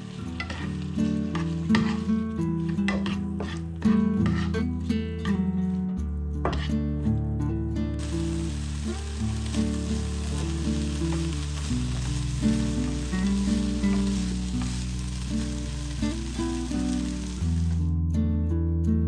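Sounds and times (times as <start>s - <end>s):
food sizzling in a frying pan: 0.0s - 3.6s, 4.2s - 4.6s, 6.5s - 6.7s, 8.0s - 17.9s.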